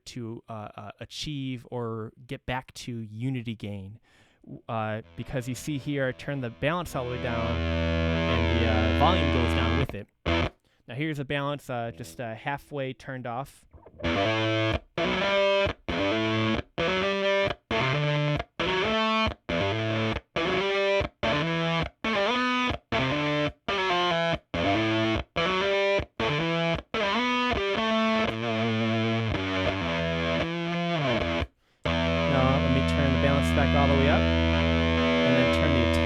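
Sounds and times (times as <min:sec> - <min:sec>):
fuzzed electric guitar: 0:04.4 - 0:10.5, 0:13.7 - 0:36.0.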